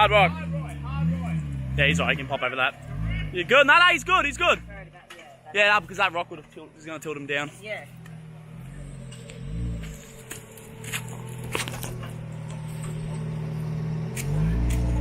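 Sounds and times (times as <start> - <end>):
engine running at low revs: 7.8 - 15.0.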